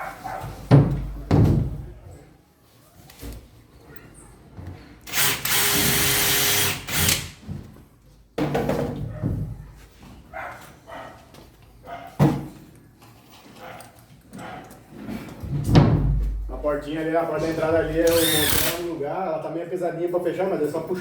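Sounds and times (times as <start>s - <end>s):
power tool whining: 5.1s - 7.3s, 17.9s - 18.9s.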